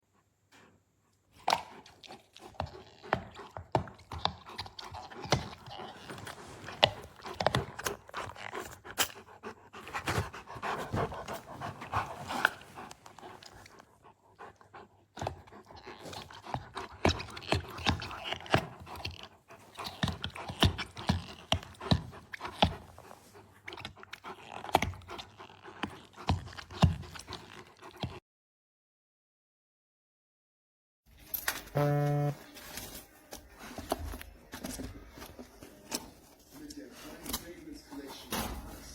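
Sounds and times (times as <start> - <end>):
dog panting: 0.1 - 28.2, 33.4 - 38.9
teeth clicking on rubber ball: 1.4 - 6.2, 15.2 - 23.0, 23.7 - 28.1.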